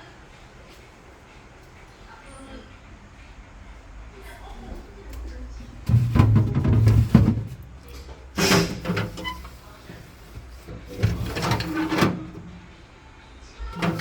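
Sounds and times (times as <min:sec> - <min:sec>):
refrigerator doors and drawers knocking: 0:05.8 - 0:07.8, 0:08.4 - 0:12.6, 0:13.7 - 0:14.0.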